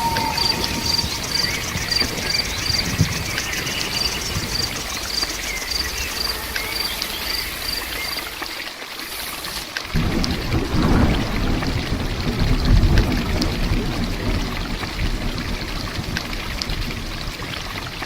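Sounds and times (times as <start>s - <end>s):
faint bird calls: 0.0s - 8.5s
crickets chirping: 0.0s - 9.6s
steady rain: 0.0s - 18.0s.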